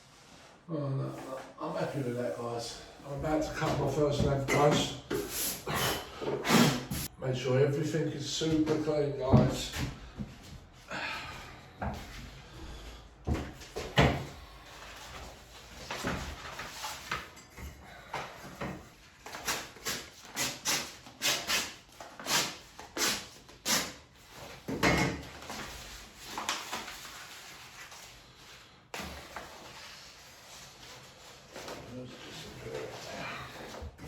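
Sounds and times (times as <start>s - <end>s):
wallpaper rustling and crackling: 13.5s - 17.5s, 25.3s - 34.0s.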